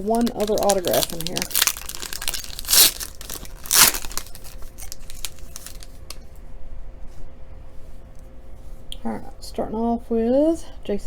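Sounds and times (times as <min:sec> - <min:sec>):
foil wrapper ripping: 0:00.0 - 0:06.2
wrapper and cards crinkling: 0:00.0 - 0:06.2.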